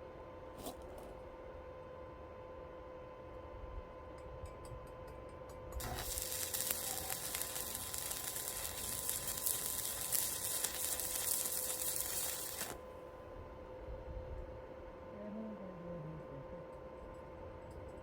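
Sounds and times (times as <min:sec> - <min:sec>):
arc welder crackling sizzle: 0:05.7 - 0:12.9.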